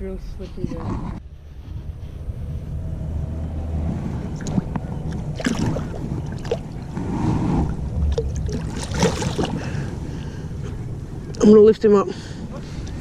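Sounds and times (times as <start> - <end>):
wind rumbling on microphone: 0.0 - 13.0
water splashes: 4.1 - 10.6.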